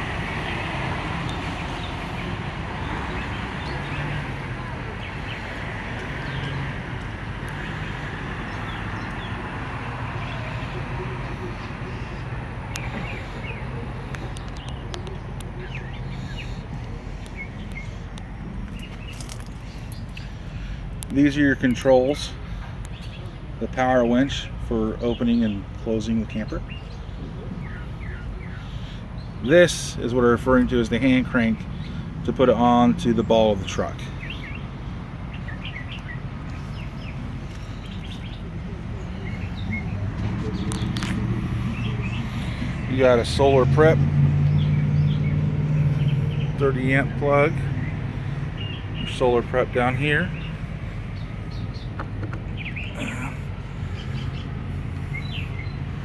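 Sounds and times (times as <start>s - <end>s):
steady low rumble: 0.0s - 23.7s, 34.1s - 56.0s
steady low hum: 0.0s - 30.1s
small birds chirping: 0.0s - 56.0s.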